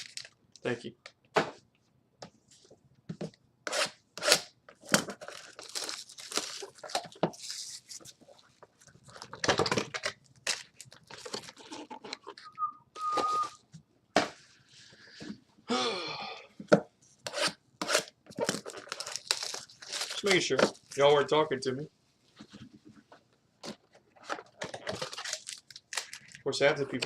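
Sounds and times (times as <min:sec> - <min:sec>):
foil packs crinkling: 0:00.0 - 0:00.4, 0:05.1 - 0:08.2, 0:08.8 - 0:12.4, 0:18.3 - 0:21.2, 0:24.5 - 0:26.9
short steady beep: 0:12.6 - 0:13.6.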